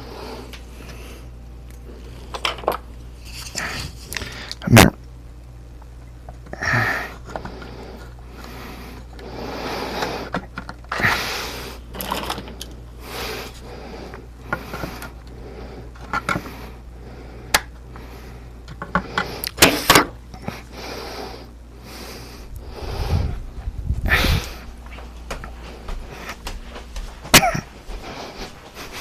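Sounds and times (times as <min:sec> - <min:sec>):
steady low hum: 0:00.0 - 0:29.0
rubbing and handling noises: 0:01.9 - 0:04.6.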